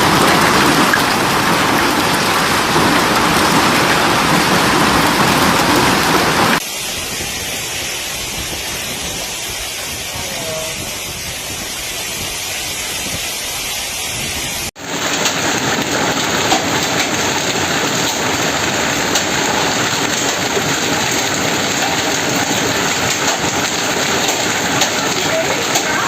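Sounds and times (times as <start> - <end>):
hailstones hitting: 0.0 - 7.5, 14.7 - 26.0
heavy rain pelting down: 0.0 - 26.0.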